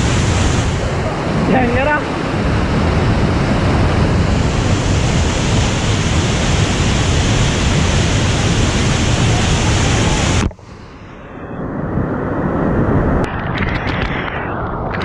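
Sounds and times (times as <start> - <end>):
waterfall rushing: 0.0 - 10.5.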